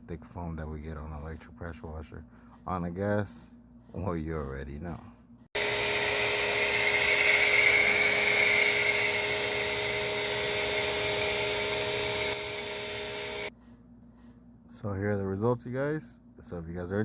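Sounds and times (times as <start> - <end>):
hiss of spraying foam: 5.6 - 13.5
pressure washer whining: 5.6 - 13.5.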